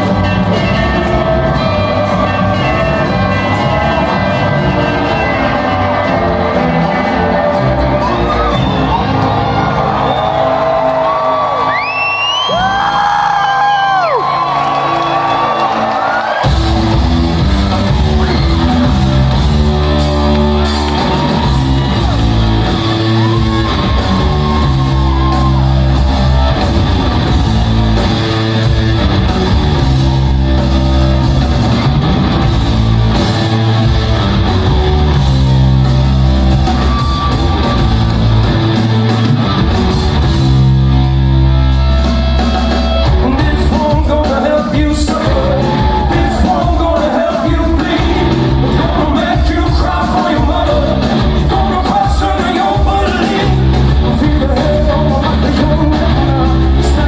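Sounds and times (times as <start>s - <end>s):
rock band playing live: 0.0s - 57.0s.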